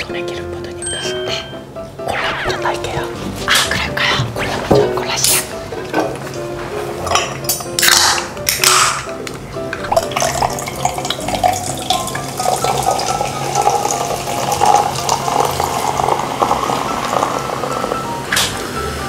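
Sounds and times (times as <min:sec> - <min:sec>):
cola pouring and fizzing: 0:09.8 - 0:18.8.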